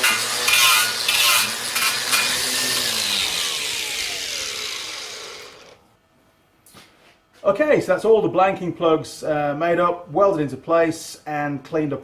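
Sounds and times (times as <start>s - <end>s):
motor winding down: 0.0s - 5.8s
power tool grinding metal: 0.0s - 5.8s.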